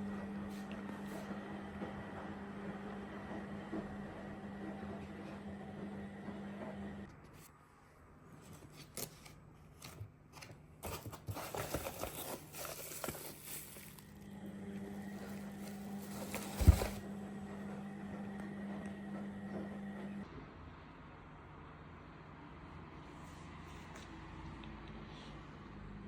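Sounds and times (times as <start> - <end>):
low steady hum: 7.0 - 17.5
wrapping crinkling and tearing: 10.9 - 14.2, 15.2 - 17.0.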